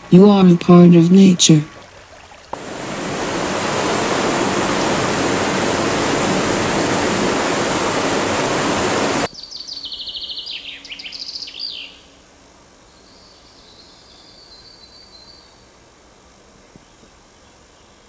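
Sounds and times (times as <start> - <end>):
rushing water: 1.2 - 9.3
songbird chirping and trilling: 9.3 - 12.2, 12.9 - 15.7.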